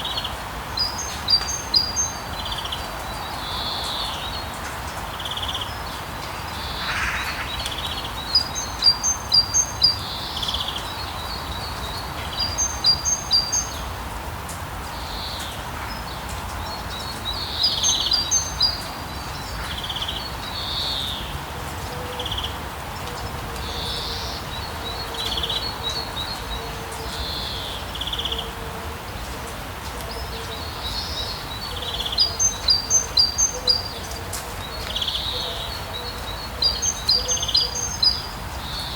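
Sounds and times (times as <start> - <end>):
birds singing: 0.0 - 14.0, 14.9 - 28.6, 30.1 - 38.9
bird chirping: 6.5 - 13.9, 30.8 - 34.2, 34.8 - 38.9.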